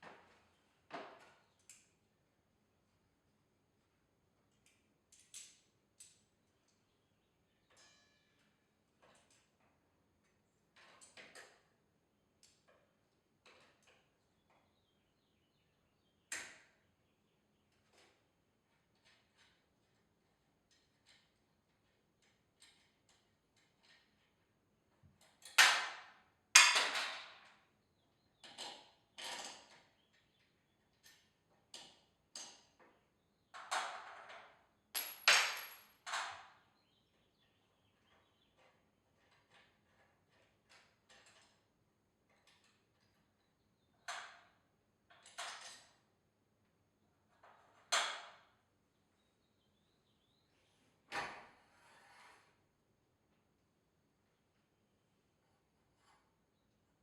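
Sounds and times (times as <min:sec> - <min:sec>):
faint metal knocks and clinks: 0:07.6 - 0:09.8, 0:35.0 - 0:36.0.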